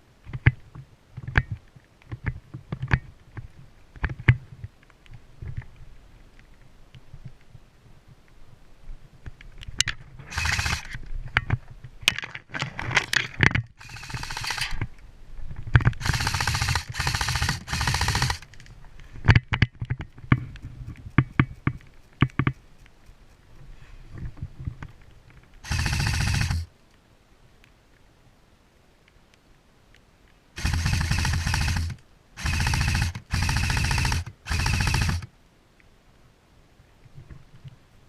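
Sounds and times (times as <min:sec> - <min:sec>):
sharp clicks: 0:09.6 - 0:11.5, 0:13.0 - 0:15.0, 0:15.8 - 0:23.4, 0:25.0 - 0:27.0, 0:30.6 - 0:35.3
airsoft guns full-auto bursts: 0:10.3 - 0:11.0, 0:13.8 - 0:14.9, 0:16.0 - 0:18.6, 0:25.6 - 0:26.7, 0:30.6 - 0:35.3.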